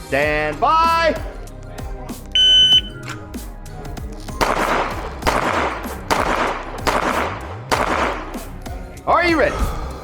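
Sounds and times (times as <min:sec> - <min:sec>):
shot timer start signal: 0:02.4 - 0:03.0
handgun shots: 0:04.4 - 0:08.5.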